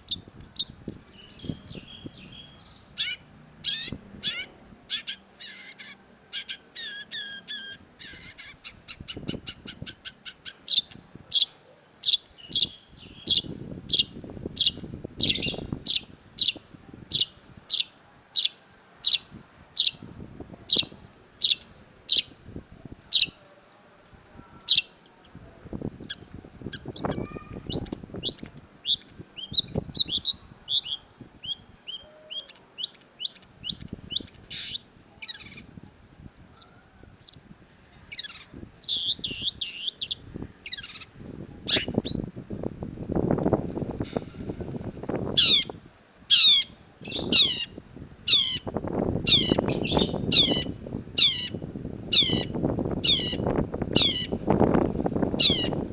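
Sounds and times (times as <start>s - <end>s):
bird warbling: 0.0s - 16.6s, 26.1s - 42.2s, 45.3s - 54.5s, 55.3s - 55.8s.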